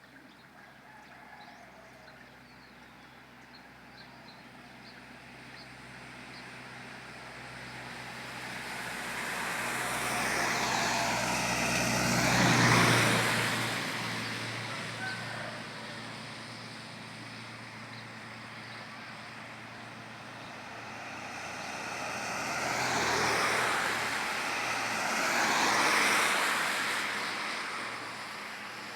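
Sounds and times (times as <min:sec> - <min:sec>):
tyres hissing on wet road: 0:05.2 - 0:28.9
car engine hum: 0:05.3 - 0:28.9.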